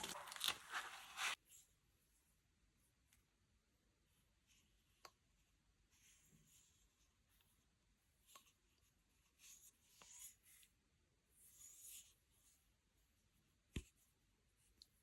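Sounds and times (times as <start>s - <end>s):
scratchy rustling and scraping: 0.0s - 1.4s.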